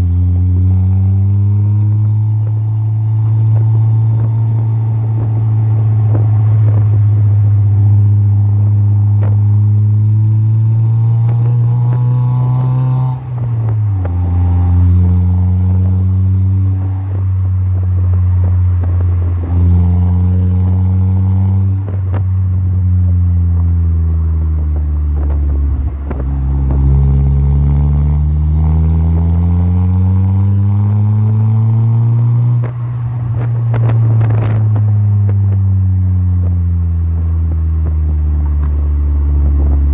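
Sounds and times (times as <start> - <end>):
car engine exhaust accelerating: 0.0 - 39.9.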